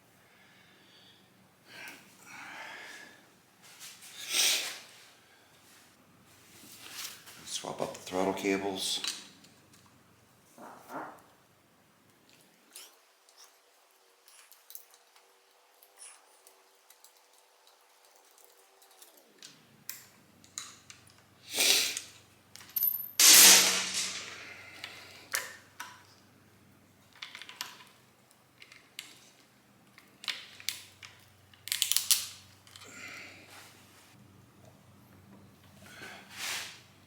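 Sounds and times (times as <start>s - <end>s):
tools and parts clicking and rattling: 14.2s - 26.2s, 27.0s - 32.9s.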